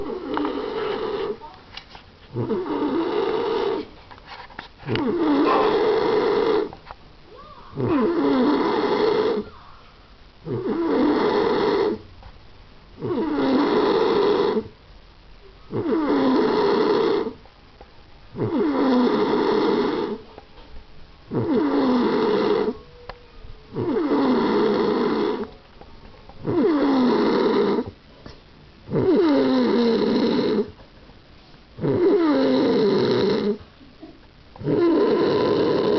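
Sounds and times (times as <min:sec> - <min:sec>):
man snoring loudly: 0:00.0 - 0:01.4, 0:02.4 - 0:03.8, 0:05.0 - 0:06.7, 0:07.8 - 0:09.4, 0:10.4 - 0:12.0, 0:13.0 - 0:14.7, 0:15.7 - 0:17.4, 0:18.4 - 0:20.2, 0:21.3 - 0:22.8, 0:23.7 - 0:25.5, 0:26.4 - 0:27.9, 0:28.9 - 0:30.7, 0:31.8 - 0:33.6, 0:34.6 - 0:35.9.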